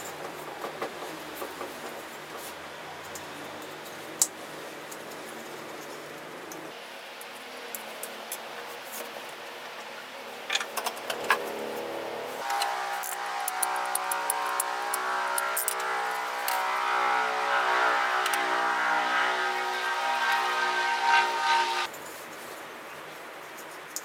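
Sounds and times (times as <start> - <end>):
sustained music chord: 11.5 - 21.9.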